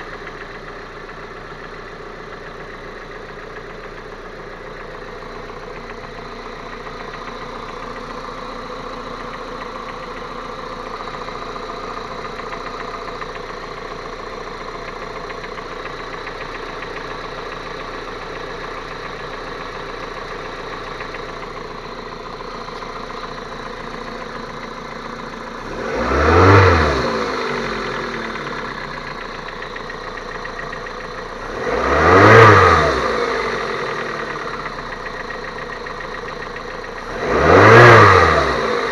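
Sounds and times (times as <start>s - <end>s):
car engine idling: 0.0s - 38.9s
engine revving: 20.0s - 38.9s.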